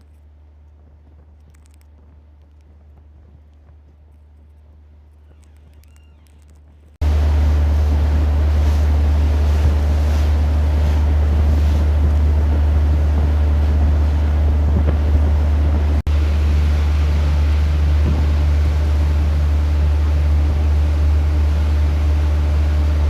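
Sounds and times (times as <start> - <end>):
low engine drone: 0.0 - 23.0
wind buffeting microphone: 0.0 - 23.0
water rushing: 7.0 - 23.0.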